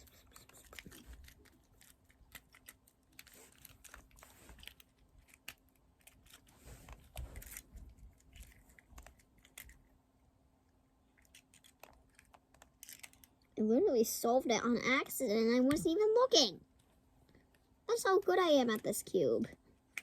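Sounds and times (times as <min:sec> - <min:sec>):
puzzle cube plastic clicking: 0:11.2 - 0:13.4.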